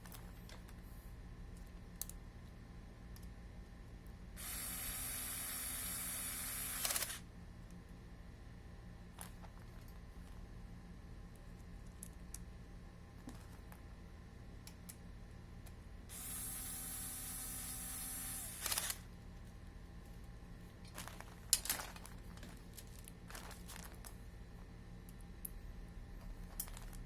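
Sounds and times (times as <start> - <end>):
cordless screwdriver motor running: 4.4 - 7.2, 16.1 - 19.0.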